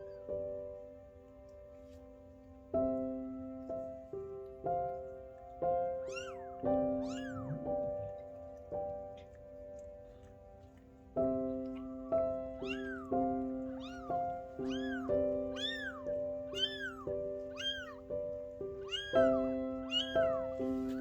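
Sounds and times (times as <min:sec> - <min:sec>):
soft piano music: 0:00.0 - 0:21.0
kitten mewing: 0:05.9 - 0:08.4, 0:11.5 - 0:21.0.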